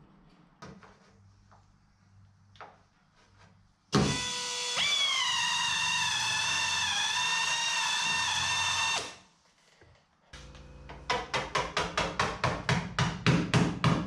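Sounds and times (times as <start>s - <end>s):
pneumatic tool whine: 4.0s - 9.2s.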